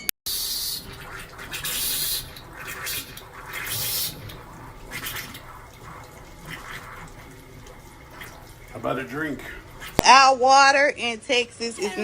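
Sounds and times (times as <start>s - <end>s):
water gushing from a tap: 0.3s - 12.0s.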